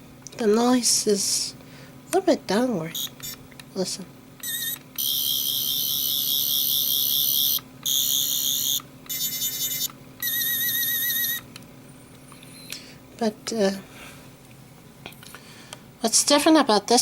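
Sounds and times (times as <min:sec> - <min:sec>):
toy warbling electronic buzz: 0:02.8 - 0:03.4, 0:04.4 - 0:11.5.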